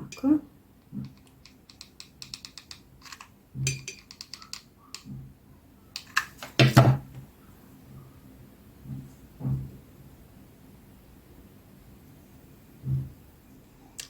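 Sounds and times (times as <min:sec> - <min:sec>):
glass jar and tools clicking: 0:01.1 - 0:04.6
handling noise: 0:06.0 - 0:07.2.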